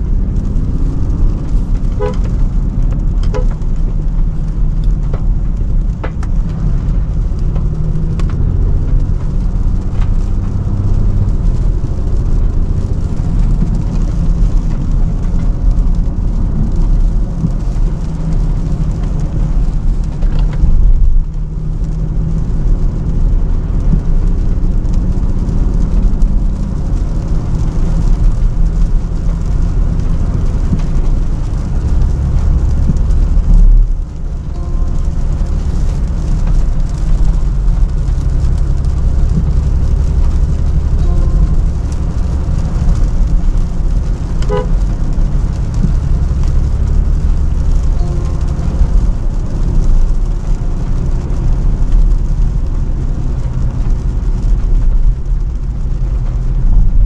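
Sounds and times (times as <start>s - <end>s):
car engine and road rumble: 0.0s - 57.0s
tyre hiss on wet road: 23.0s - 57.0s.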